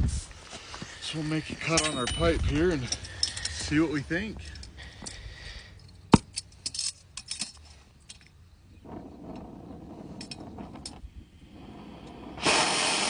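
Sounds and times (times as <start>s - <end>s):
sharp metallic clicks and clinks: 1.6s - 8.4s
soft gas hiss: 7.6s - 13.0s.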